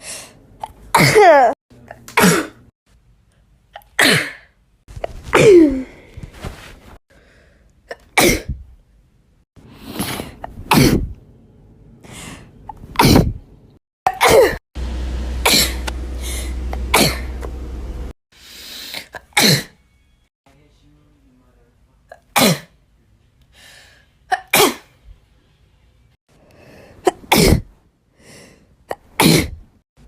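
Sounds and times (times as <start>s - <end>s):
woman sneezing: 0.9s - 1.6s, 5.2s - 5.9s, 27.1s - 27.7s, 29.2s - 29.6s
low hum: 14.8s - 18.1s.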